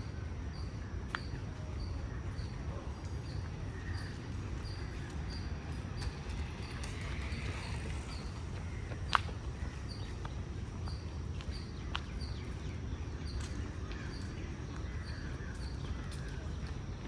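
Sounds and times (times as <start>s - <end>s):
steady low rumble: 3.3s - 10.4s.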